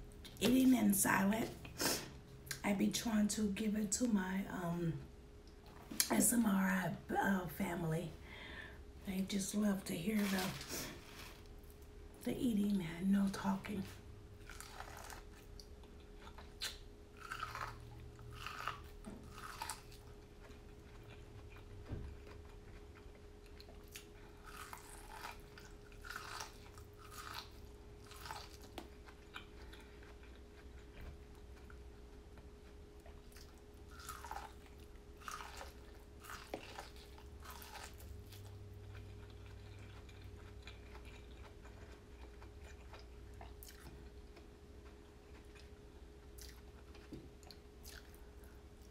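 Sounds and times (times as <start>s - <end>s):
faint hum: 0.0s - 48.9s
person chewing food: 14.4s - 48.9s.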